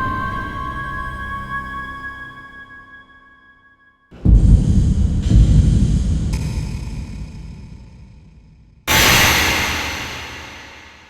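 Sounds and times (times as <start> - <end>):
deep rumbling boom: 4.2 - 11.0
hiss: 8.9 - 11.0.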